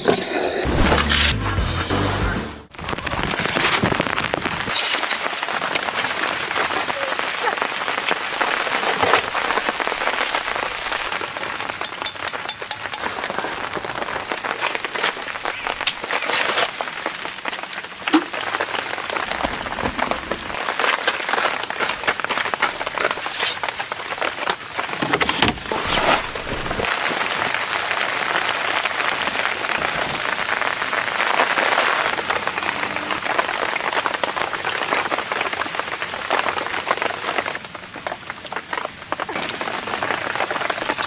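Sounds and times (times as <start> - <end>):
rain falling: 2.7 - 41.0
raindrops tapping a surface: 2.8 - 25.5.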